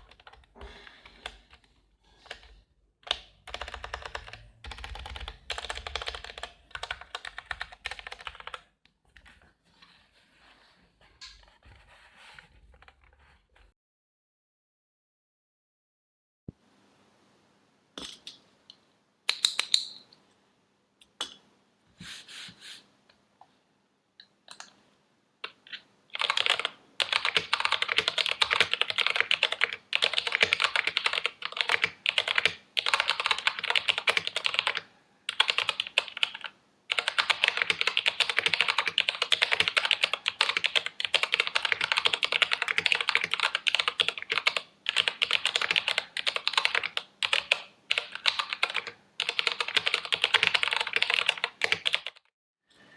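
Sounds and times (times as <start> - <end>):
mechanical keyboard typing: 0.0 - 1.6, 2.2 - 9.4, 25.7 - 52.3.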